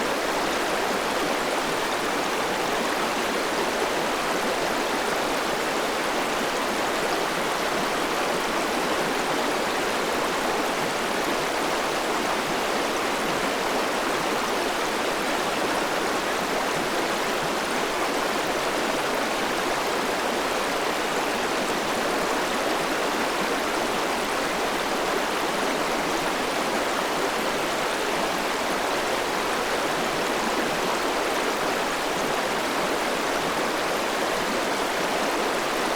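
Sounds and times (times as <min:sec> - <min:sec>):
river water flowing: 0:00.0 - 0:35.9.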